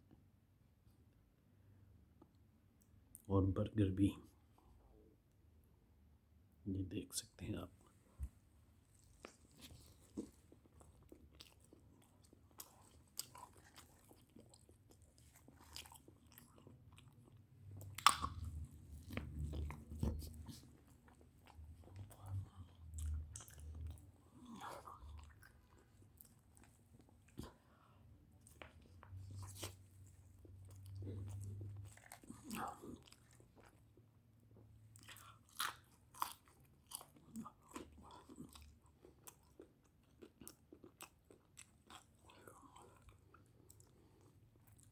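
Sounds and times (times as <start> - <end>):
person eating crunchy food: 9.1 - 33.8, 35.0 - 44.9.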